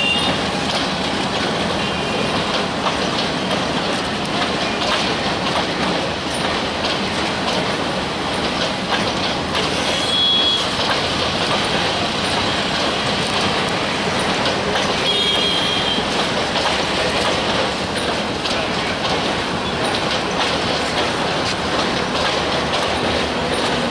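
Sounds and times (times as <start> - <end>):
train rumbling on track: 0.0 - 23.9
wheels clicking over rail joints: 0.0 - 23.9
high-pitched wheel squeals: 9.9 - 10.8.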